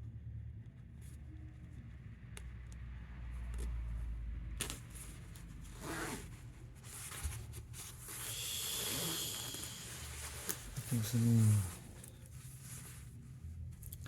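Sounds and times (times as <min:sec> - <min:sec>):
fabric rustling: 0:04.6 - 0:13.9.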